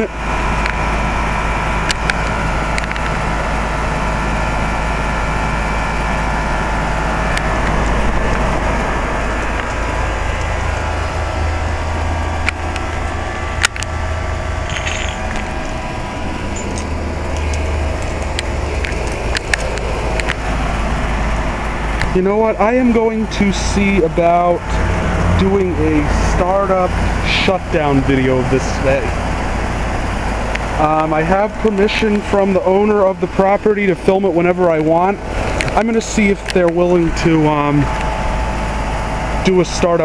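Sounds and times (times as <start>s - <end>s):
compressor hum: 0.0s - 40.0s
condenser fan: 0.0s - 40.0s
sharp clicks: 16.5s - 20.5s.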